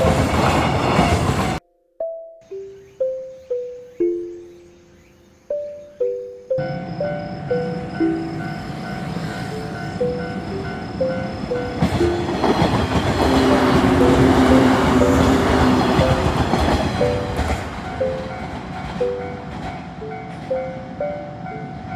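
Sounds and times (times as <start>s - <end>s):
train wheels rumbling and clattering: 0.0s - 1.6s, 10.8s - 21.8s
level crossing warning bell: 0.0s - 4.7s, 5.5s - 21.9s.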